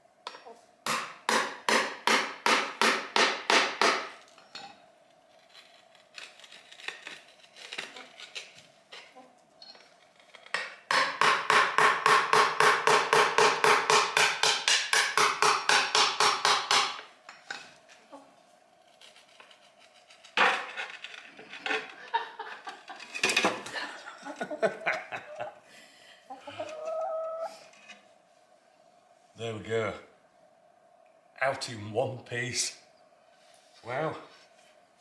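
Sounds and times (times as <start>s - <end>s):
hammer striking chisel: 0.9s - 4.2s, 10.6s - 17.1s.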